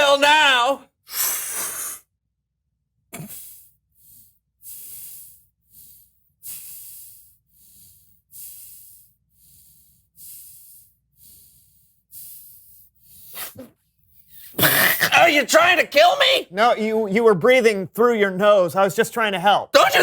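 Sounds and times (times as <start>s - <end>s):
person breathing hard through nose: 1.1s - 2.1s, 3.2s - 14.6s.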